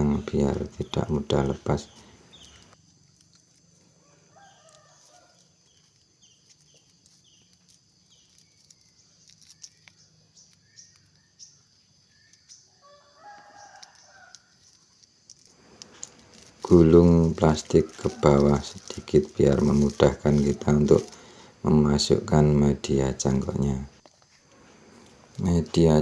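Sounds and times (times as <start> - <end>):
high bird chirps: 0.0 - 2.8, 4.4 - 14.9
rooster crowing: 4.0 - 5.7, 12.8 - 14.8, 16.8 - 21.5.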